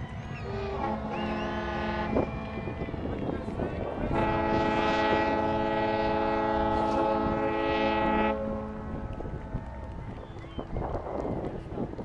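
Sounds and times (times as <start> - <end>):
long horn blast: 0.4 - 3.1, 3.8 - 9.6.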